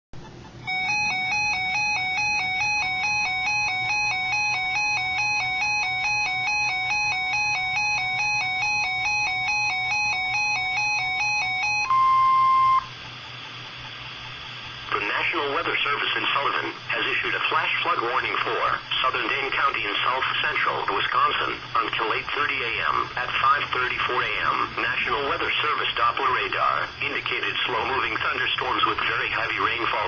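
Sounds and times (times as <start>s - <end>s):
buzzy two-note warble: 0.6s - 13.1s
short steady beep: 0.7s - 13.0s
faint radio hiss: 12.1s - 30.0s.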